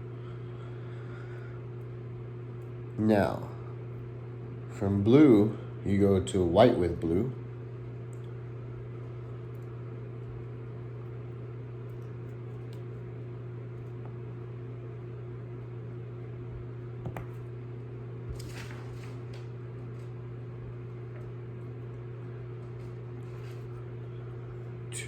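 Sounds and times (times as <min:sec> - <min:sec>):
steady low hum: 0:00.0 - 0:25.0
faint clicks and rustles of wires: 0:07.8 - 0:14.3, 0:18.2 - 0:24.7.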